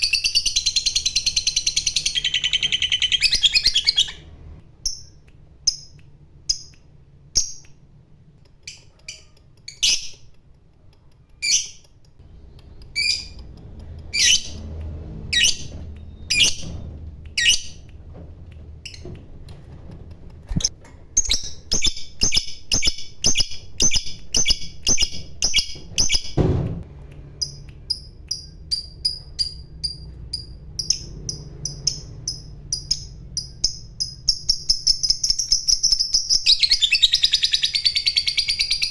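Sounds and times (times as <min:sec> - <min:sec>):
lovebird chirping: 0:00.0 - 0:06.7, 0:08.5 - 0:10.4, 0:11.3 - 0:14.7, 0:15.3 - 0:17.9, 0:20.5 - 0:26.3, 0:27.4 - 0:38.9
thump: 0:25.8 - 0:26.8.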